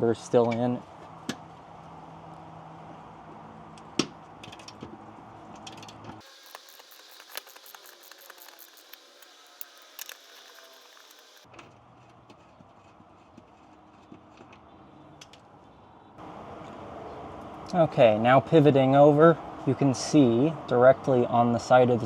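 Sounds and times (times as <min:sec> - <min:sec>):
hand ratchet clicking: 0:06.2 - 0:11.5.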